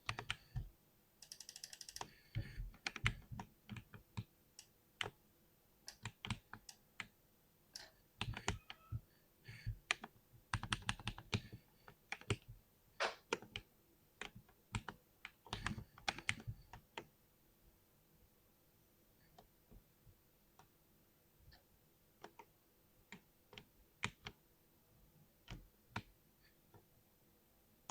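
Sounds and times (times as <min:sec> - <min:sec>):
keyboard typing clicks: 0:07.8 - 0:09.0.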